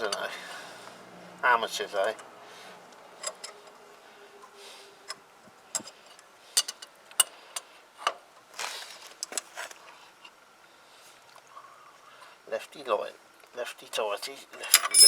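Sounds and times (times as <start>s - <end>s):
short metal scrape: 14.8s - 15.0s.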